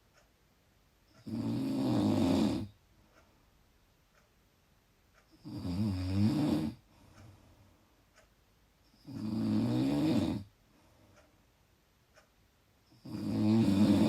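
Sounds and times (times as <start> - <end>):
person snoring loudly: 1.2 - 2.7, 5.4 - 6.8, 9.0 - 10.5, 13.0 - 14.0.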